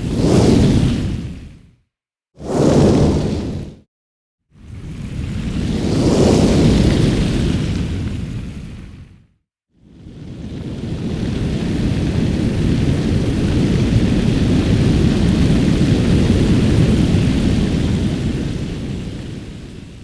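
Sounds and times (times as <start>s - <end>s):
fireball whoosh: 0.0s - 1.6s, 2.4s - 3.8s, 5.3s - 7.4s.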